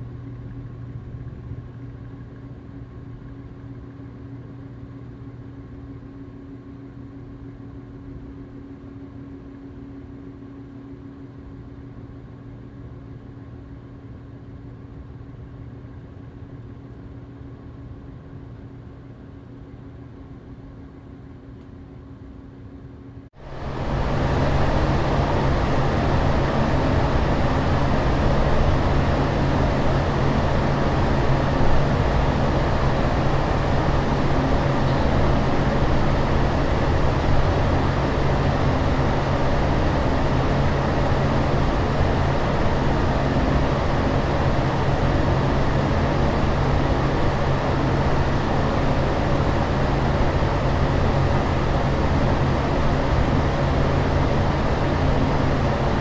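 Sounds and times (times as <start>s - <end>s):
ceiling fan whirring: 23.4s - 56.0s
extractor fan rushing whir: 23.4s - 56.0s.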